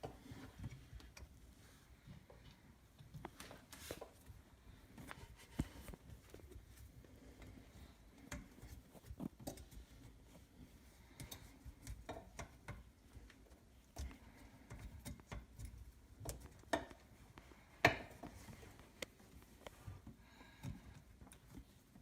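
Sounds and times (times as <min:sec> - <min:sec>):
clicks and knocks of drain parts: 0:11.1 - 0:17.2, 0:17.8 - 0:18.5.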